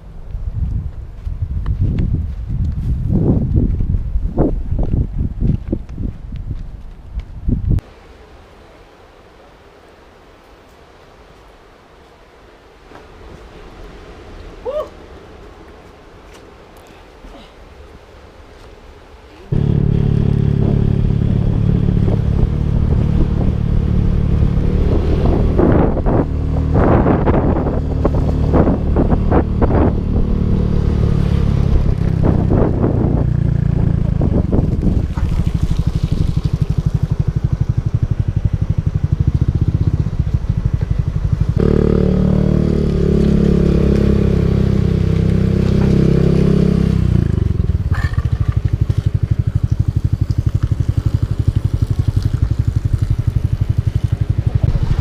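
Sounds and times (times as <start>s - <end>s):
motorcycle engine running: 19.5s - 55.0s.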